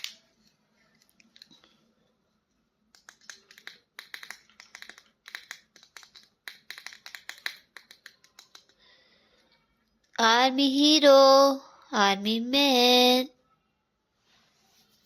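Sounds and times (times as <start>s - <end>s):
plastic toys clicking and tapping: 2.9s - 8.9s.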